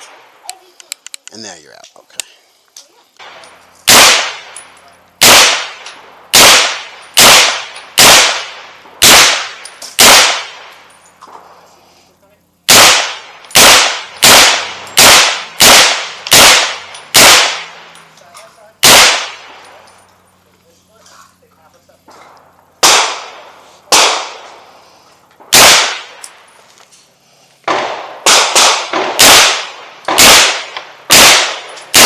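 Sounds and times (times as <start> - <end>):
gunshots: 3.2 - 4.6, 5.2 - 11.5, 12.7 - 18.0, 18.8 - 19.8, 22.2 - 24.7, 25.4 - 26.2, 27.6 - 32.0.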